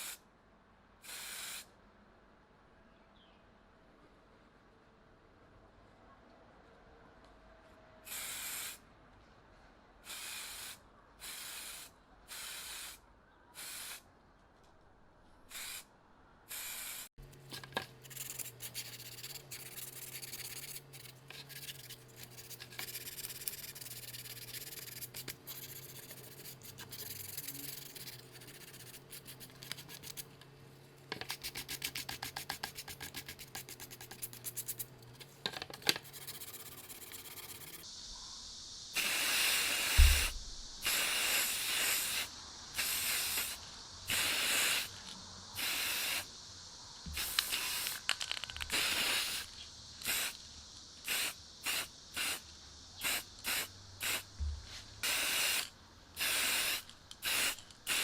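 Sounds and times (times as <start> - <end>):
short spray hisses: 1.0 - 1.7, 8.1 - 8.8, 10.0 - 13.0, 13.6 - 14.0, 15.5 - 15.9, 16.5 - 17.1, 36.0 - 46.4, 47.1 - 58.0
low mechanical hum: 17.2 - 38.9, 39.9 - 41.0
rubbing and scraping: 17.5 - 30.3, 31.2 - 37.8
fast rattle of ticks: 18.0 - 30.3, 31.1 - 54.4, 55.0 - 58.0.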